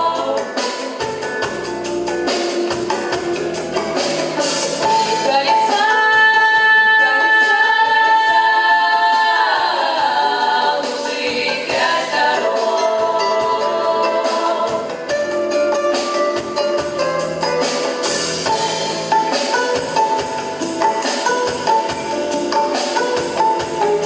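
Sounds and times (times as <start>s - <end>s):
vocal ensemble singing in harmony: 0.0s - 16.6s
percussion of backing music: 0.0s - 24.0s.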